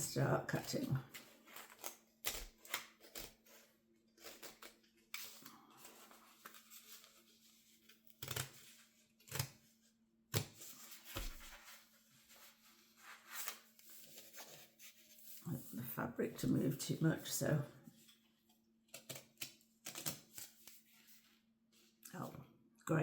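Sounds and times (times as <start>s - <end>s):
scissors snipping fabric: 8.1s - 9.6s.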